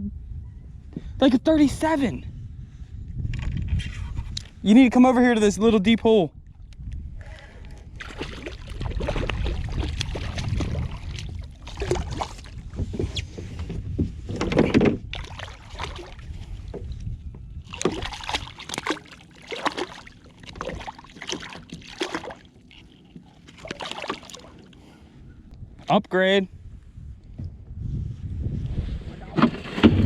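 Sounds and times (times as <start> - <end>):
low rumble: 5.9 - 14.4
kayak splashes and drips: 7.7 - 12.7, 15.0 - 16.9, 17.6 - 24.8.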